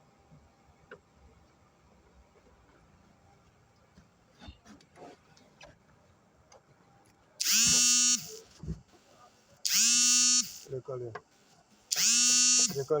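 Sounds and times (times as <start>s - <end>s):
faint clicks and knocks: 3.4s - 7.3s.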